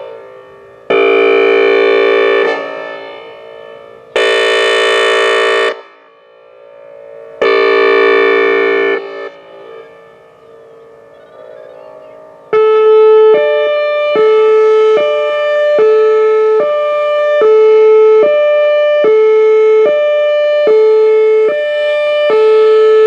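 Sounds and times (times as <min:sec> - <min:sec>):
warning siren blasts: 0:00.0 - 0:23.0.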